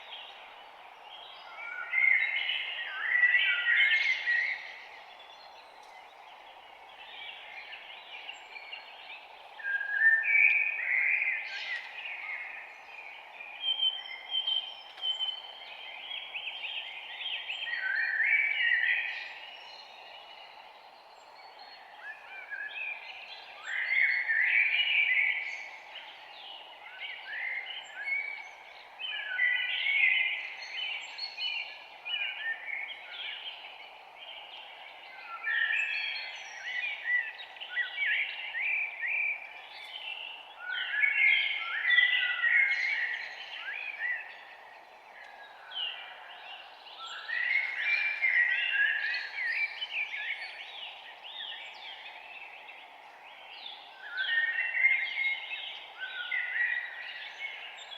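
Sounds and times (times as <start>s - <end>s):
steady low hiss: 11.4s - 57.9s
birds chirping and singing: 34.3s - 57.9s.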